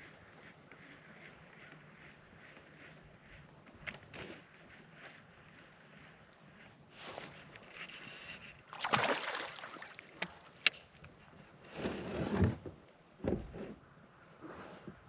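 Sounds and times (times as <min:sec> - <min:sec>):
water splashing against kayak: 0:08.0 - 0:10.7.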